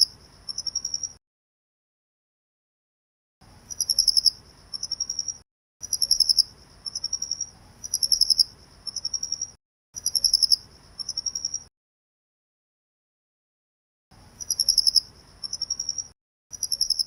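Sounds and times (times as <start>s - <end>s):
cricket chirping: 0.0s - 1.2s, 3.5s - 11.7s, 14.2s - 17.0s.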